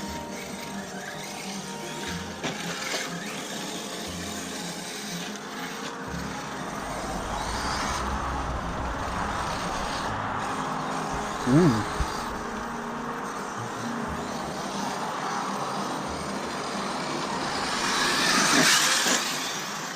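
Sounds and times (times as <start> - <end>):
rc car motor whining: 0.0 - 19.9
tyre and drivetrain noise: 0.0 - 19.9
low rumble: 6.7 - 12.6.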